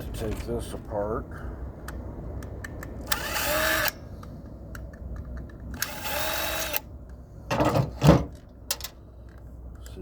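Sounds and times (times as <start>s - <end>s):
power screwdriver whirring: 3.1s - 4.0s, 5.8s - 6.9s.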